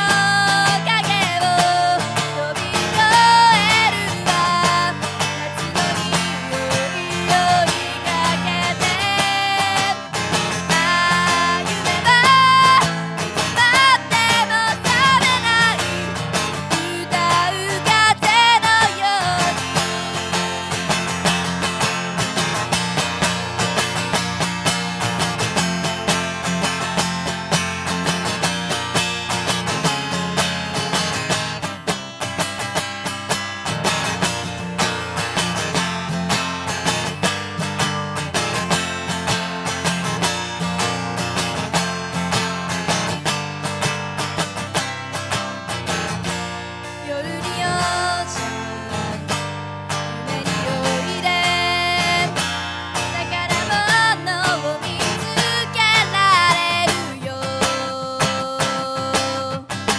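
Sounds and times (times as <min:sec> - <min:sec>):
woman singing: 0:00.0 - 0:27.3, 0:46.8 - 0:59.9
acoustic guitar strumming: 0:00.0 - 0:59.9.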